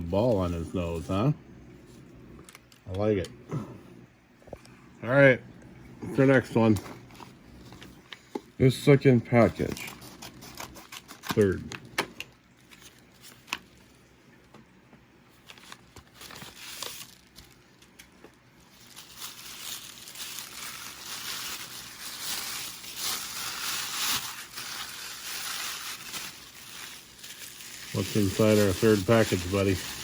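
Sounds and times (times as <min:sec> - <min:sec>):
packaging crinkling: 0:09.4 - 0:14.0, 0:15.3 - 0:30.0.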